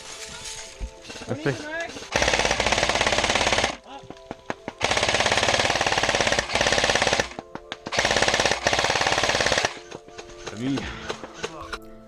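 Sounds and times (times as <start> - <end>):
faint background music: 0.0 - 12.0
airsoft gun full-auto bursts: 1.9 - 3.8, 4.8 - 10.0.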